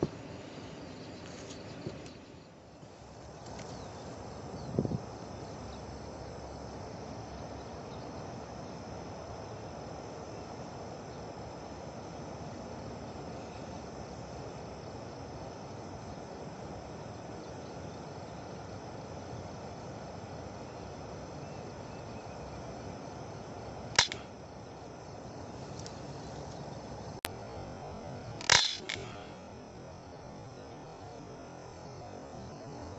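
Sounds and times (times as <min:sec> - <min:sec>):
insects and crickets droning: 0:00.0 - 0:32.9
air rifle shot: 0:24.0 - 0:24.3, 0:28.4 - 0:29.2
brief click: 0:24.0 - 0:24.3.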